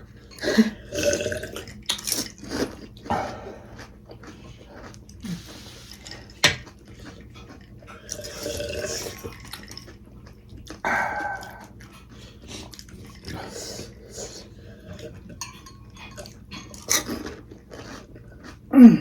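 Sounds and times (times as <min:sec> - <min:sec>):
chewing: 0:00.0 - 0:19.0
wet slurping: 0:00.3 - 0:10.0.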